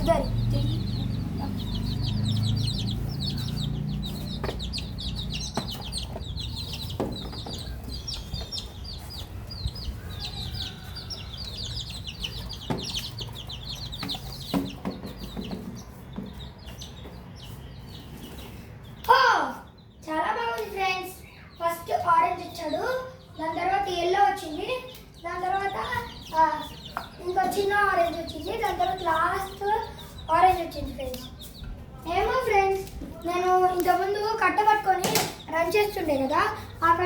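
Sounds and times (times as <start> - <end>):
chicks peeping: 0.0 - 37.0
sharp knocks: 4.3 - 8.0, 12.5 - 16.4, 35.0 - 35.5.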